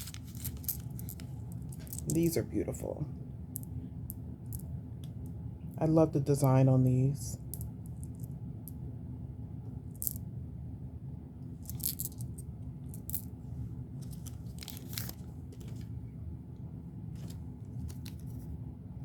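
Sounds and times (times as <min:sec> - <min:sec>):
plastic packaging crinkling: 0:00.0 - 0:02.3, 0:14.0 - 0:15.9, 0:17.2 - 0:18.4
beads clicking: 0:00.0 - 0:02.4, 0:10.0 - 0:10.2, 0:11.6 - 0:13.3
steady low hum: 0:00.0 - 0:19.0.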